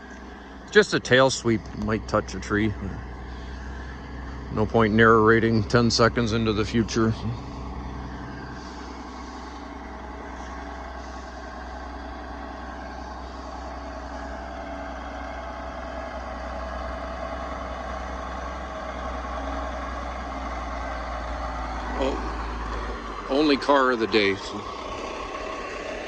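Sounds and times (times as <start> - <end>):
diesel truck engine running: 0.0 - 26.0.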